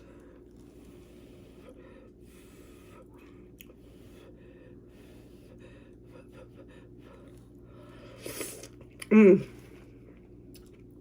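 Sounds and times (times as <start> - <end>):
person chewing quietly: 0.0 - 4.4, 5.8 - 11.0
faint breathing: 0.0 - 8.5
steady low hum: 0.0 - 11.0.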